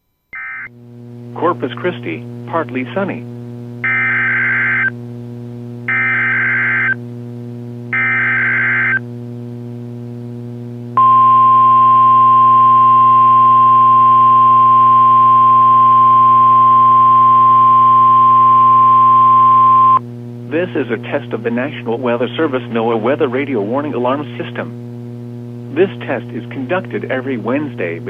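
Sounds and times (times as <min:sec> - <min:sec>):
low radio hum: 0:00.4 - 0:28.0
screechy data bursts: 0:03.8 - 0:04.9, 0:05.9 - 0:07.0, 0:08.0 - 0:09.0
steady warning alarm tone: 0:03.8 - 0:04.9, 0:05.9 - 0:07.0, 0:07.9 - 0:09.0, 0:11.0 - 0:20.0.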